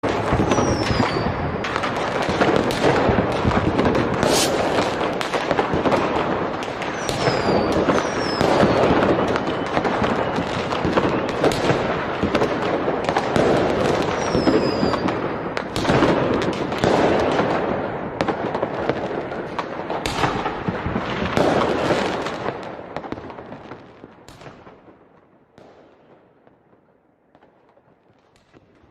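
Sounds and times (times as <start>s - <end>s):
fireworks bangs and crackling: 0.0s - 28.9s
falling fireworks whistles: 0.1s - 12.5s, 13.1s - 16.2s.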